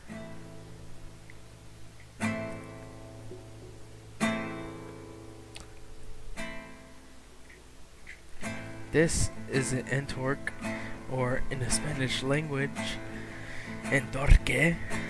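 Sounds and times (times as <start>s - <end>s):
acoustic guitar chords strummed: 0.0s - 15.0s.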